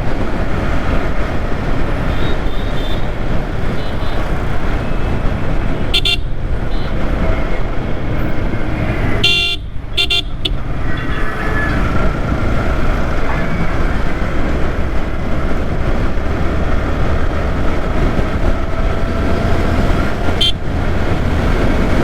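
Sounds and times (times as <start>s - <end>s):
wind and road noise: 0.0s - 22.0s
vehicle horn honks: 5.9s - 7.0s, 9.2s - 11.2s, 20.4s - 20.6s.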